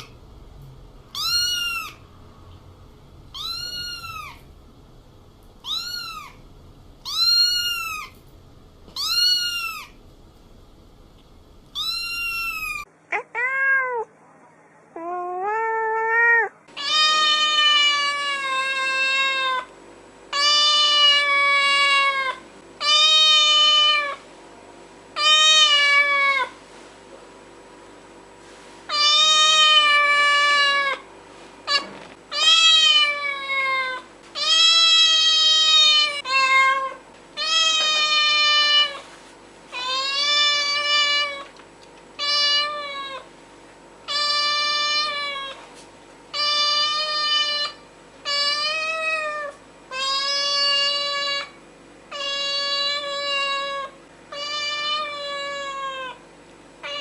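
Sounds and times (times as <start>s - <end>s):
faint steady hum: 0.0s - 57.0s
cat meowing: 1.1s - 2.0s, 3.3s - 4.5s, 5.6s - 6.4s, 7.0s - 8.2s, 8.9s - 10.0s, 11.7s - 14.1s, 15.0s - 19.7s, 31.7s - 39.0s, 42.2s - 43.2s, 52.1s - 56.2s.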